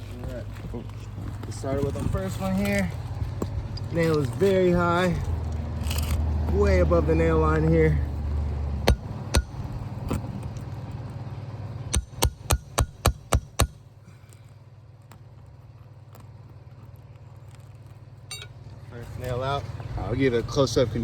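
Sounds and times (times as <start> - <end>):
hammer striking nail puller: 11.9 - 13.8.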